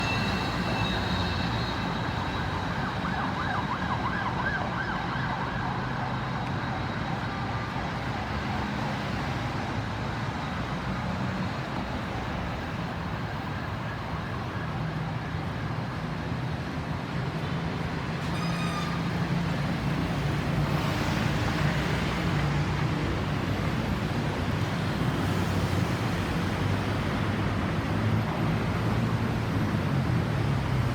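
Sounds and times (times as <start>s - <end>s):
ambulance siren wailing: 0.0s - 8.8s, 12.7s - 16.3s
traffic engines humming: 0.0s - 30.9s.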